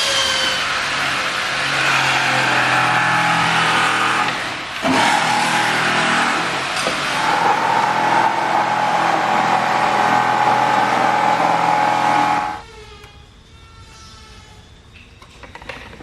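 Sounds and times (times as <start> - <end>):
power tool whining and grinding: 0.6 - 12.7.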